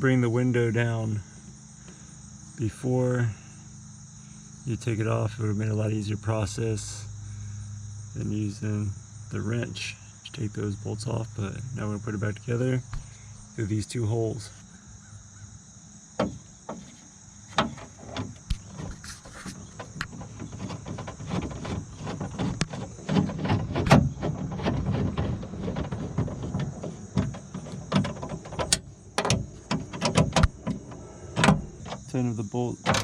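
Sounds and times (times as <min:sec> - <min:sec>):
car window regulator clicking and rattling: 0:16.2 - 0:32.1, 0:32.8 - 0:33.0.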